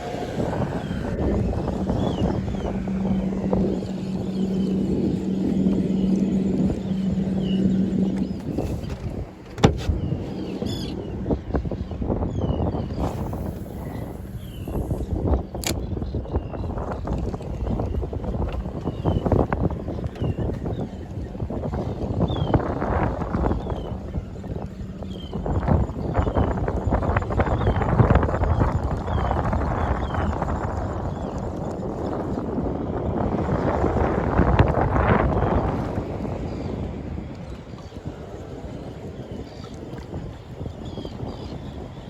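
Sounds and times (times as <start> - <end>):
engine hum: 0.0 - 40.6
wind buffeting microphone: 0.0 - 42.0
sharp click: 15.6 - 15.9.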